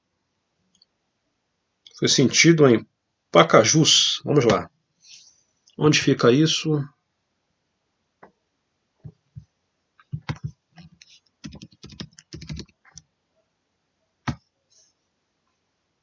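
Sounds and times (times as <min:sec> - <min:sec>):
computer keyboard typing: 0:10.0 - 0:13.0.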